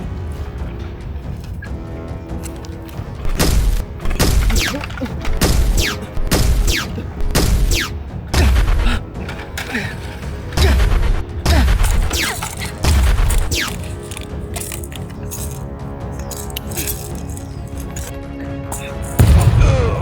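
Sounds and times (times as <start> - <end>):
action music: 0.0 - 20.0
gunfire bangs: 3.2 - 9.0, 10.6 - 14.8, 19.2 - 20.0.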